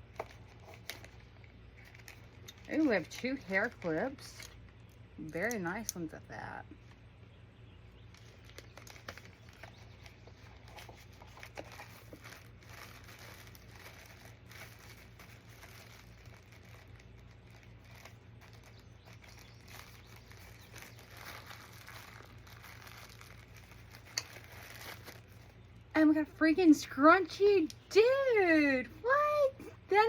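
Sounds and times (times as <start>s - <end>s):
packaging crinkling and rustling: 0.0s - 5.6s, 8.0s - 25.8s.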